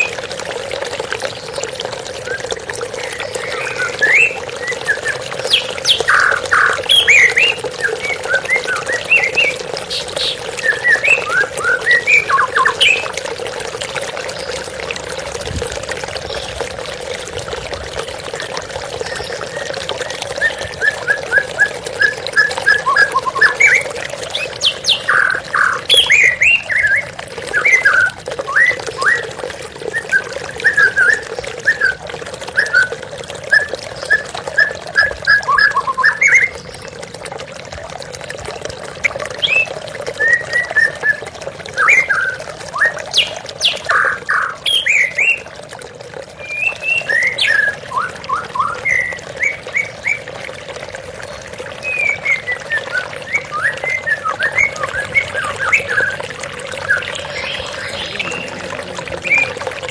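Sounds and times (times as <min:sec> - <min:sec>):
running water: 0:00.0 - 0:59.9
songbird chirping: 0:56.8 - 0:59.6.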